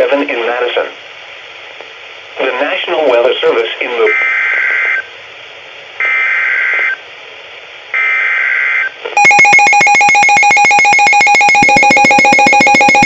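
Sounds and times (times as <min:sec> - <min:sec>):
screechy digital data bursts: 0:08.0 - 0:13.0
rapid pulsing electronic alert tone: 0:09.2 - 0:13.0.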